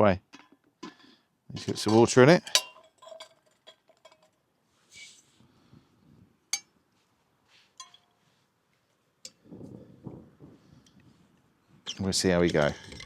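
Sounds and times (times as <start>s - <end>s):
metal pot clinking: 1.6s - 4.4s, 7.8s - 8.1s
metallic ring: 1.8s - 4.3s.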